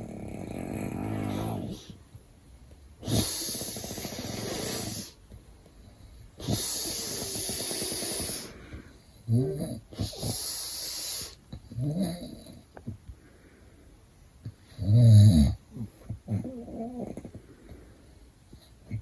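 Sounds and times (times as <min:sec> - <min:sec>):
man snoring: 0:00.0 - 0:01.8, 0:14.8 - 0:15.6.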